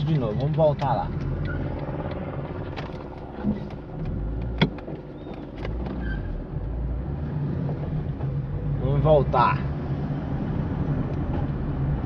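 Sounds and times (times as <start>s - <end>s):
car engine running: 0.0s - 9.7s
road rumble: 0.0s - 12.0s.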